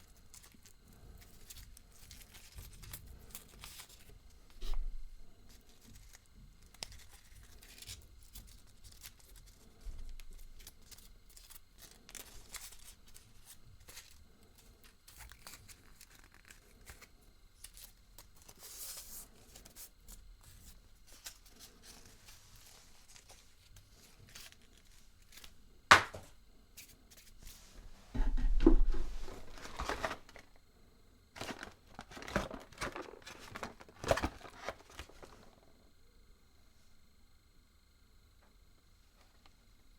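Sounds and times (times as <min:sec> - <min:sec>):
wrapping crinkling and tearing: 0:05.6 - 0:25.6, 0:29.3 - 0:30.5, 0:31.4 - 0:35.5.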